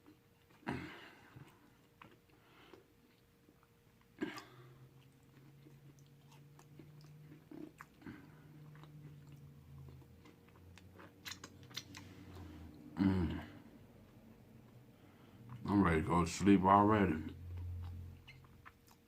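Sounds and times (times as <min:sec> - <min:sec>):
person chewing food: 0:00.0 - 0:15.7, 0:17.2 - 0:19.0
faint low hum: 0:00.0 - 0:19.0
wet mouth clicks: 0:11.0 - 0:12.1.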